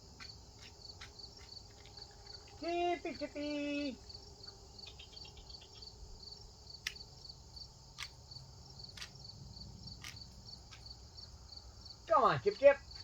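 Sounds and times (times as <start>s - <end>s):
crickets chirping: 0.0s - 13.0s
sharp ticks: 6.8s - 7.1s.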